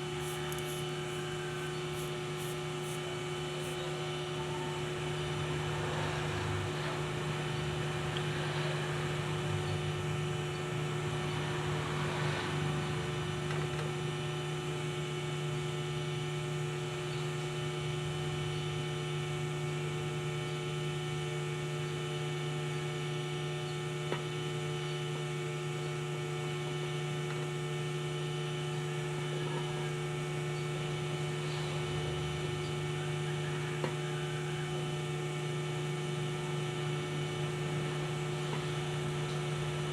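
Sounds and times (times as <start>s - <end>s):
steady electrical hum: 0.0s - 39.9s
scratchy handling noises: 0.1s - 3.8s.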